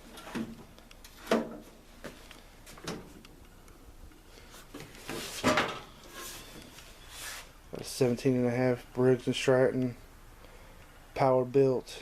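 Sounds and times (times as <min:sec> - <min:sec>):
knocks and clunks of handling: 0:04.7 - 0:05.9.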